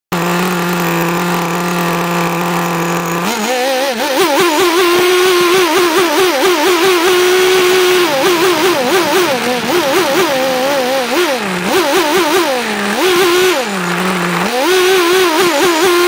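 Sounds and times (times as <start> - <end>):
small two-stroke engine revving: 0.1 - 16.0.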